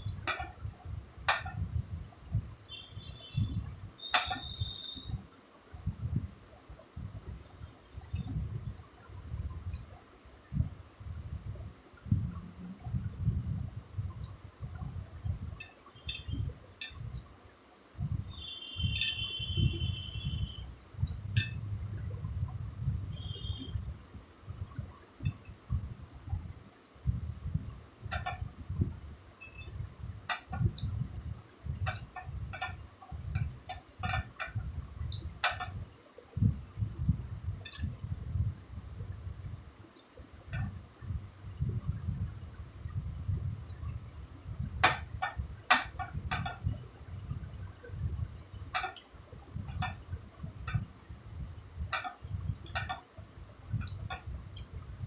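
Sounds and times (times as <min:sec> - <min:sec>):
thin high ringing tone: 0:02.7 - 0:05.2, 0:18.3 - 0:20.7, 0:29.4 - 0:29.8
utensil clinking on a dish: 0:04.1 - 0:04.5, 0:15.6 - 0:17.0, 0:18.9 - 0:19.3, 0:37.6 - 0:38.0
low pulsing rumble: 0:10.5 - 0:15.6, 0:18.0 - 0:39.8.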